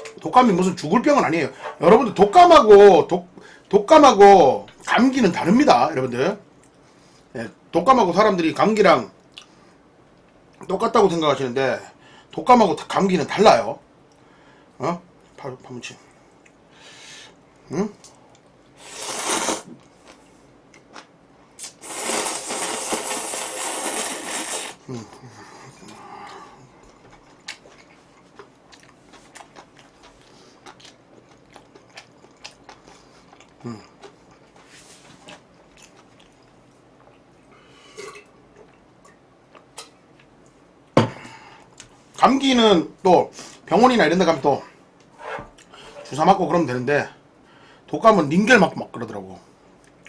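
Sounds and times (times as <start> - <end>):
close eating noises: 17.4 - 40.8.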